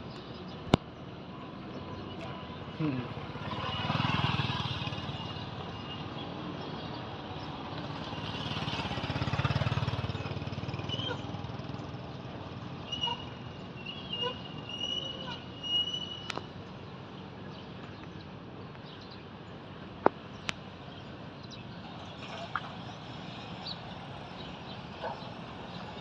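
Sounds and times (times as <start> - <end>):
outdoor background noise: 0.0 - 26.0.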